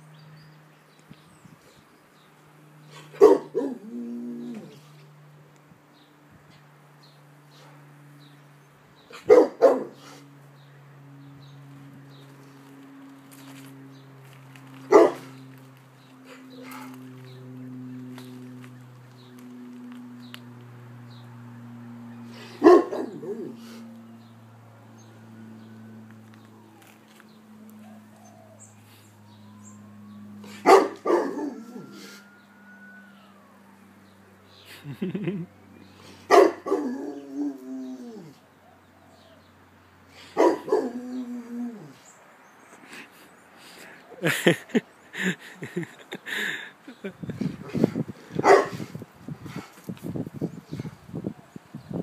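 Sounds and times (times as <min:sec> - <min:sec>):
dog barking: 0:03.1 - 0:03.8, 0:09.2 - 0:10.0, 0:14.9 - 0:15.3, 0:22.6 - 0:23.6, 0:30.6 - 0:31.8, 0:36.3 - 0:37.2, 0:40.4 - 0:41.0, 0:48.4 - 0:48.8
distant ambulance siren: 0:09.2 - 0:34.5.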